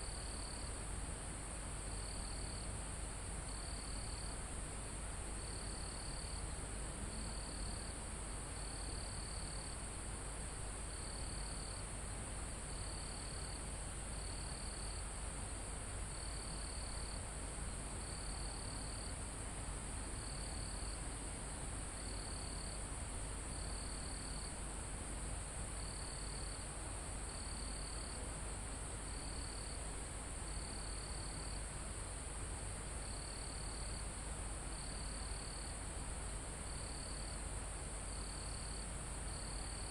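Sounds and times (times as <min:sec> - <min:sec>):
cricket trills: 0:00.0 - 0:00.8, 0:01.8 - 0:02.7, 0:03.5 - 0:04.4, 0:05.4 - 0:08.0, 0:08.6 - 0:09.9, 0:10.9 - 0:11.9, 0:12.7 - 0:15.1, 0:16.1 - 0:17.2, 0:18.0 - 0:19.2, 0:20.2 - 0:22.8, 0:23.5 - 0:24.6, 0:25.8 - 0:28.3, 0:29.0 - 0:29.8, 0:30.5 - 0:32.1, 0:33.0 - 0:34.1, 0:34.7 - 0:39.9.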